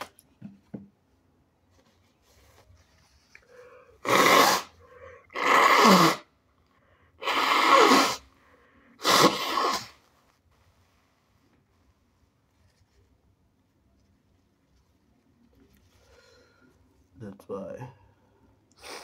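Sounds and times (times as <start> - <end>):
quiet breaths: 1.7 - 4.0, 8.3 - 9.0, 14.0 - 17.2, 17.8 - 19.0
person blowing air through nose: 3.6 - 6.3, 7.2 - 10.1, 18.8 - 19.0.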